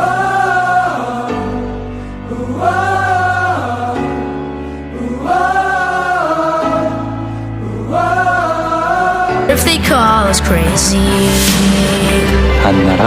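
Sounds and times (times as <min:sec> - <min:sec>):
wordless choir-like voices: 0:00.0 - 0:13.0
sustained low chords: 0:09.5 - 0:13.0.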